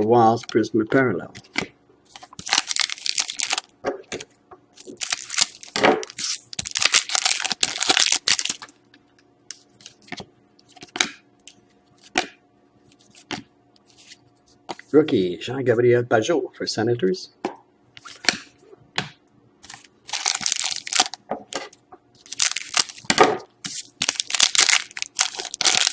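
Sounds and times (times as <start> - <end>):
foil pack tearing and crinkling: 2.2 - 3.7, 4.8 - 8.7, 19.7 - 21.2, 22.2 - 25.9.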